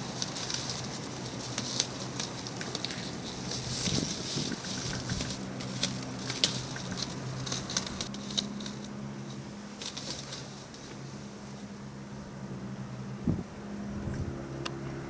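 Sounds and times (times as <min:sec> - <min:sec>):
claw clicks: 0:00.0 - 0:11.0
paws pattering: 0:00.0 - 0:11.0
cats scuffling: 0:00.0 - 0:11.8
faint steady hum: 0:00.0 - 0:15.0.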